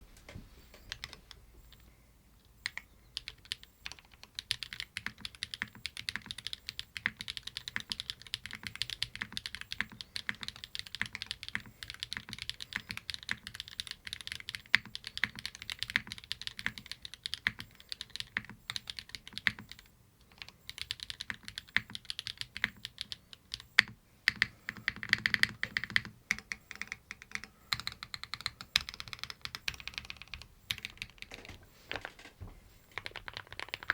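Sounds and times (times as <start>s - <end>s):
mechanical keyboard typing: 2.6s - 33.9s.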